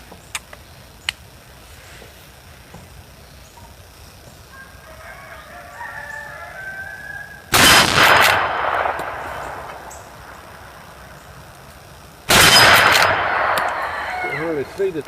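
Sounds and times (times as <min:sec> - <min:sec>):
rooster crowing: 0:04.5 - 0:07.5, 0:13.0 - 0:15.0
rifle shot echoing: 0:07.5 - 0:11.0, 0:12.3 - 0:14.8.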